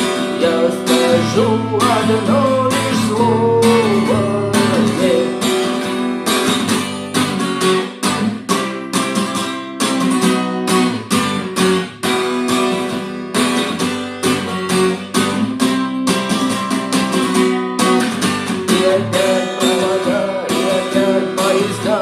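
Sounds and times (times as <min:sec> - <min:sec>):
acoustic guitar strumming chords: 0:00.0 - 0:22.0.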